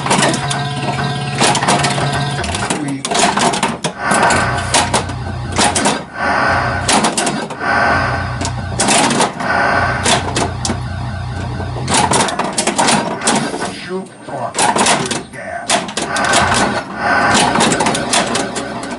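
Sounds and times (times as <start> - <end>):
pulsing electronic sound effects: 4.0 - 13.9, 16.0 - 18.9.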